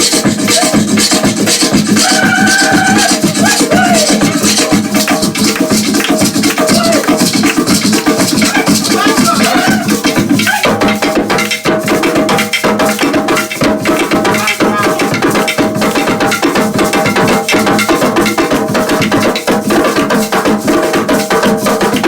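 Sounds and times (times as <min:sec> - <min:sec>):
fast hand drumming: 0:00.0 - 0:22.0
struck percussion: 0:00.0 - 0:22.0.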